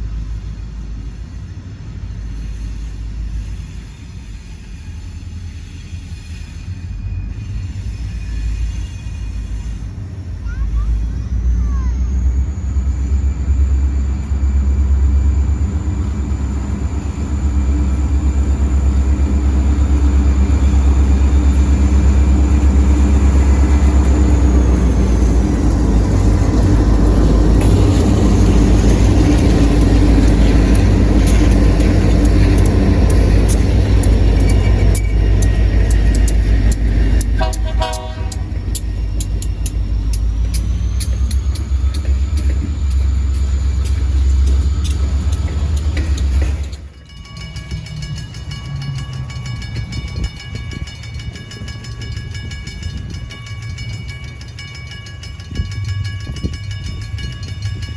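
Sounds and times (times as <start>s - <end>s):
locomotive deep rumble: 0.0s - 57.9s
locomotive air horn: 37.4s - 38.5s.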